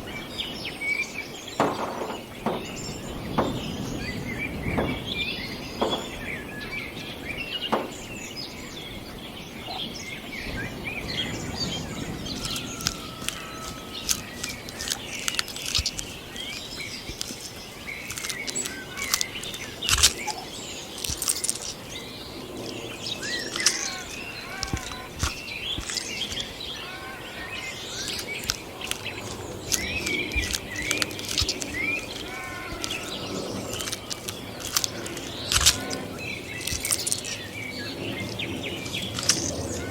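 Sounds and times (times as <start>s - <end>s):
birds chirping and calling: 0.0s - 39.9s
sharp clicks: 12.2s - 21.8s, 22.7s - 27.2s, 27.8s - 37.4s, 38.8s - 39.6s.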